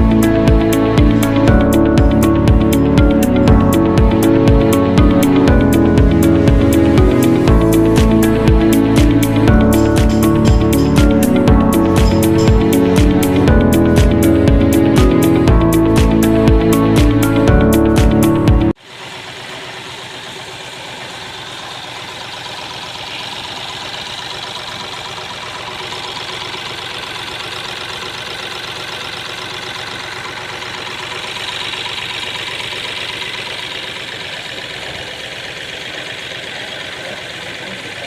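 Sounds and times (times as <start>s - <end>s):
background music: 0.0s - 18.8s
diesel engine idling: 0.0s - 38.0s.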